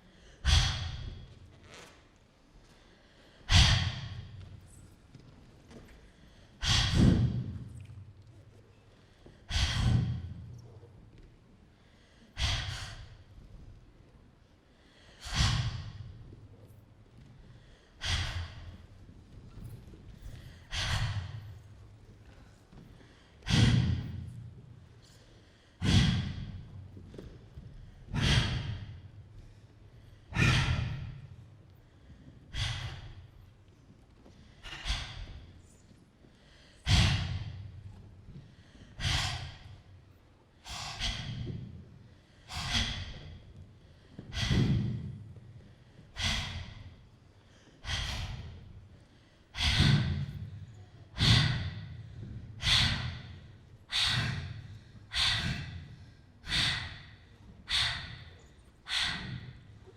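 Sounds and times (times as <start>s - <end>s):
loud sighing breaths: 40.7s - 59.9s.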